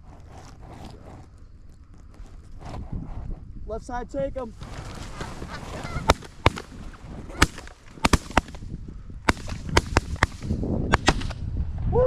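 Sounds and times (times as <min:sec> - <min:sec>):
shotgun blasts: 0:05.7 - 0:11.5.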